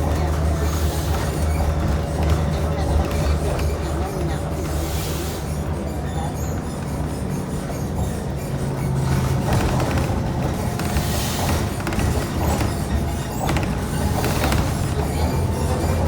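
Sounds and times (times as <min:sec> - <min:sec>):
bus engine and road rumble: 0:00.0 - 0:16.0
rattles and clicks: 0:06.8 - 0:16.0.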